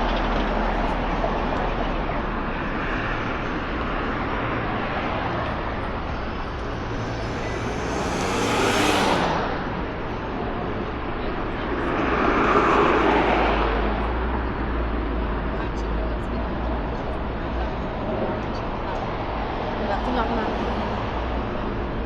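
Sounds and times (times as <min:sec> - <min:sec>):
city street traffic: 0:00.0 - 0:22.0
vehicle passing close: 0:04.0 - 0:11.1.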